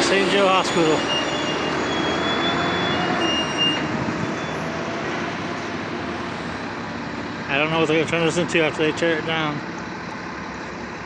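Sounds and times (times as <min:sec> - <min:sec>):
faint high squeals: 0:00.0 - 0:04.8
vehicle and road noise: 0:00.0 - 0:11.0.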